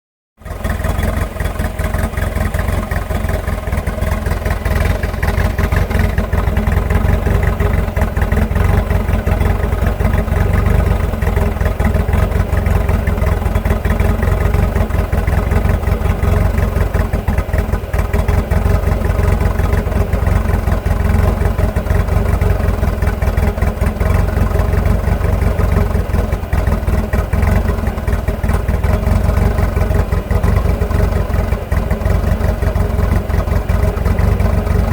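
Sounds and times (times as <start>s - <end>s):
pickup engine idling roughly: 0.4s - 34.9s.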